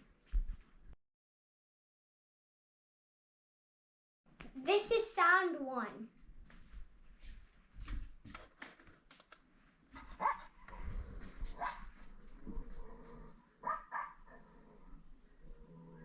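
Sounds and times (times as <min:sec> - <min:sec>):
dog barking: 0:10.1 - 0:10.6, 0:11.5 - 0:11.9, 0:13.6 - 0:14.4.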